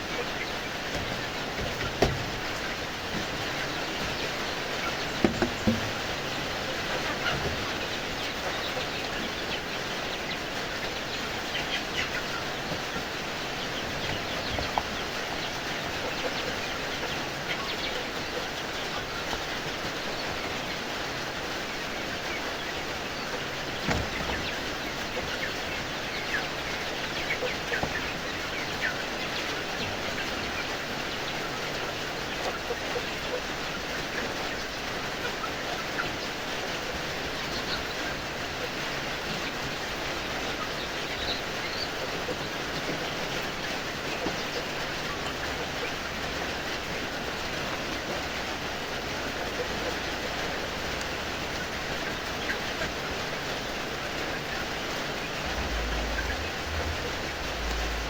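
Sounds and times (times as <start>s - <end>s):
chickens chirping and clucking: 0.0s - 58.0s
steady rushing background noise: 53.9s - 58.0s.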